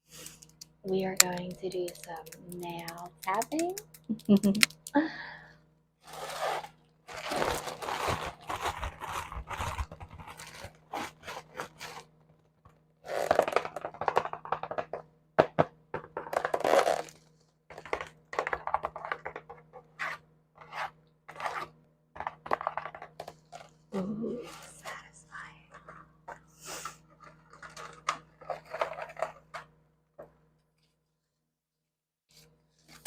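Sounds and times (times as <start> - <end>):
fingernails scraping: 6.0 - 12.1, 19.2 - 21.7.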